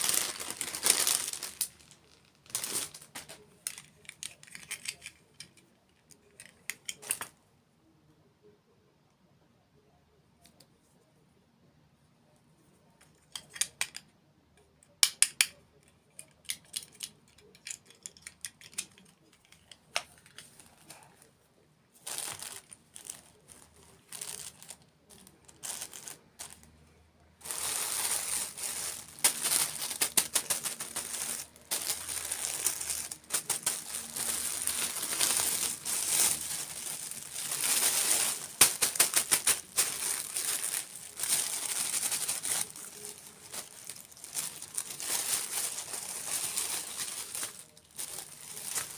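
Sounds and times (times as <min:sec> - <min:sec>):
wrapper crinkling and crackling: 0:00.0 - 0:07.3, 0:22.0 - 0:26.8, 0:27.4 - 0:48.9.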